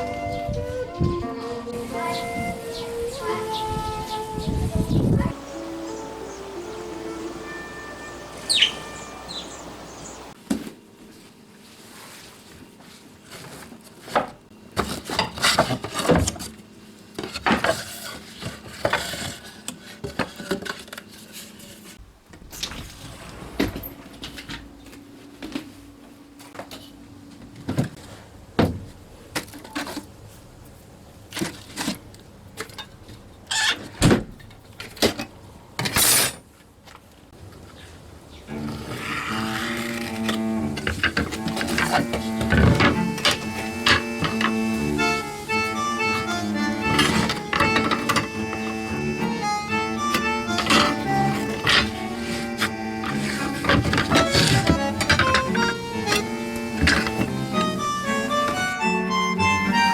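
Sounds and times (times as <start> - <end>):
rustling or scraping: 10.7 - 16.6, 17.2 - 34.0, 35.8 - 49.6, 50.5 - 58.9.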